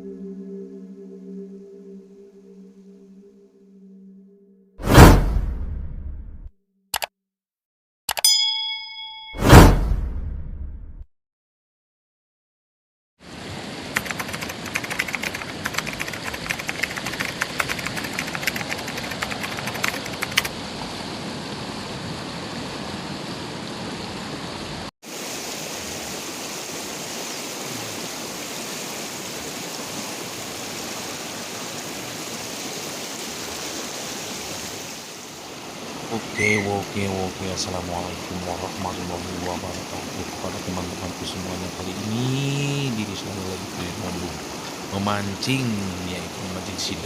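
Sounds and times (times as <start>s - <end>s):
rushing water: 13.2s - 47.0s.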